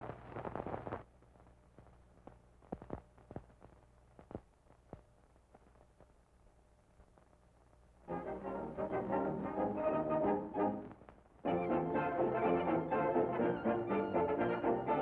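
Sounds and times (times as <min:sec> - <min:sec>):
dense crackle: 0:00.0 - 0:08.1, 0:10.8 - 0:11.5
low electrical hum: 0:00.0 - 0:15.0
clicks and pops: 0:01.8 - 0:06.1.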